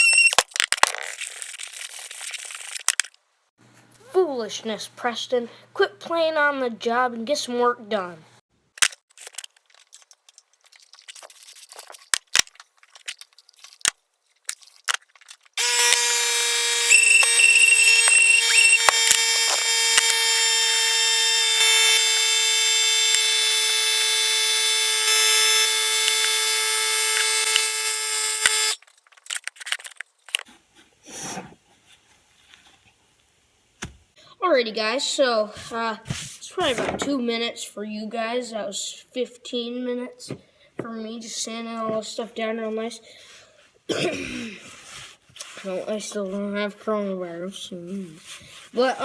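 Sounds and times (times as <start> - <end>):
buzzing alarm tone: 0.0 - 0.4, 15.6 - 28.8.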